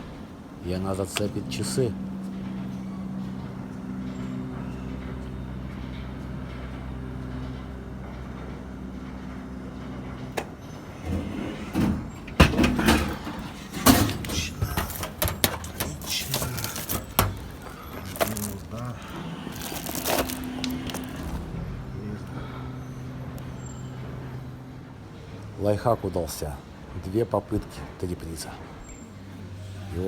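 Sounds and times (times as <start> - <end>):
prize machine motor humming: 0.3 - 26.9
prizes dropping knocks and rattles: 12.6 - 21.4.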